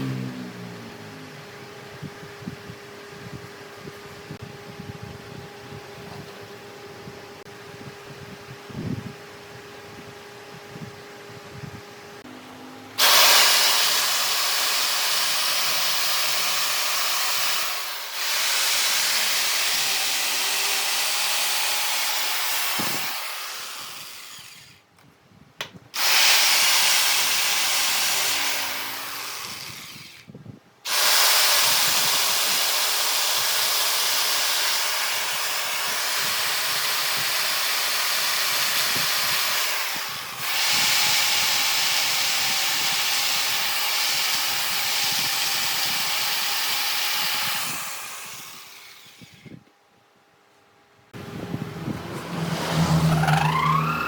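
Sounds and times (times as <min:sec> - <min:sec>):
power tool hissing on wood: 0:13.0 - 0:24.8, 0:30.9 - 0:49.6.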